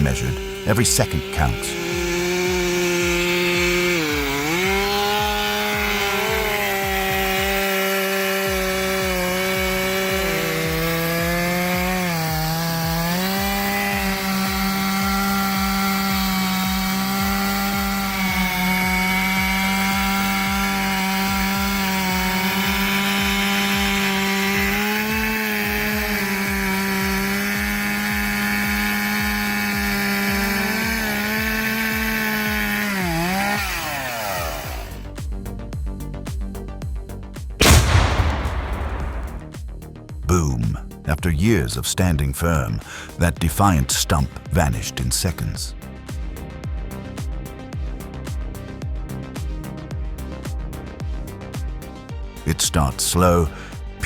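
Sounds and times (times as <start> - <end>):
chainsaw cutting into tree trunk: 0.0 - 35.2, 37.6 - 39.5.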